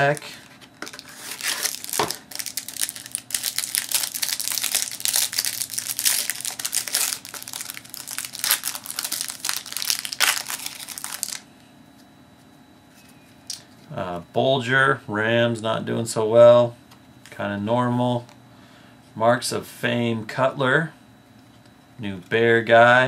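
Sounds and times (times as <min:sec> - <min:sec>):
plastic wrapping crinkling: 0:00.0 - 0:11.4.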